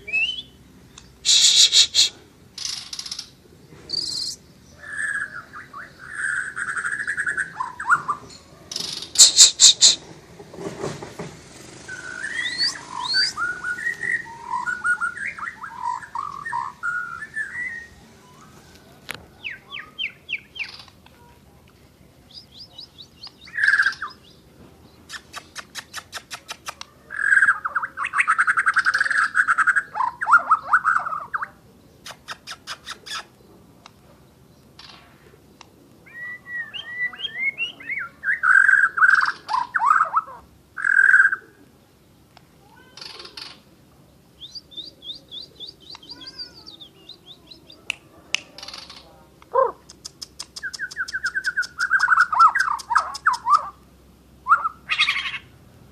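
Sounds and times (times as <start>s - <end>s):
bird singing whistled phrases: 0.0s - 0.6s, 3.9s - 8.2s, 11.9s - 18.6s, 36.0s - 41.4s, 44.4s - 47.9s, 50.6s - 53.7s, 54.4s - 55.4s.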